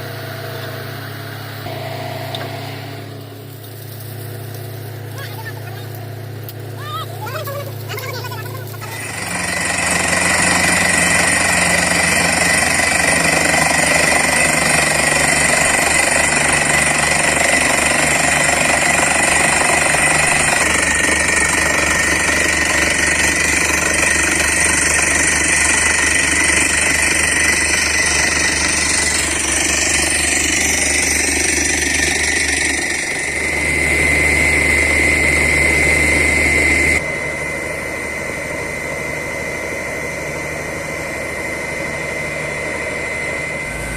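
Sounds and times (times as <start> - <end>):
compressor running: 0.0 - 43.9
down-the-hole hammer pounding: 9.0 - 33.3.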